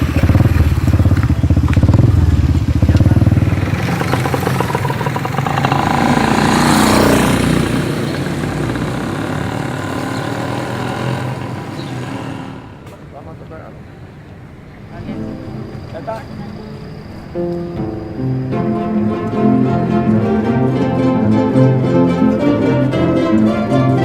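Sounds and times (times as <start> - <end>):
motorcycle-like engine running: 0.0 - 13.1.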